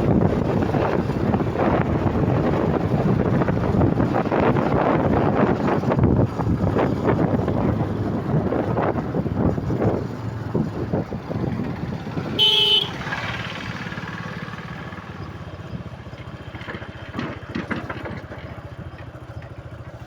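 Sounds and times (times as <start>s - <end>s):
unsilenced vehicle engine running: 0.0s - 20.0s
horn toot: 12.4s - 13.0s.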